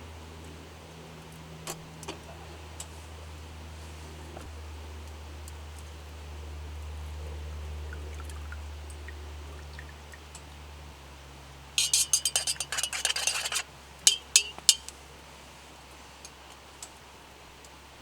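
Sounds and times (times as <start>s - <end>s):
tableware clinking: 11.8s - 14.9s.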